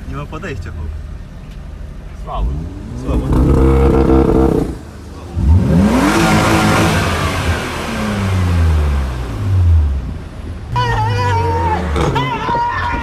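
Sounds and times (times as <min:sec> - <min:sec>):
car engine revving: 0:01.7 - 0:12.6
loud exhaust burst: 0:02.4 - 0:10.2.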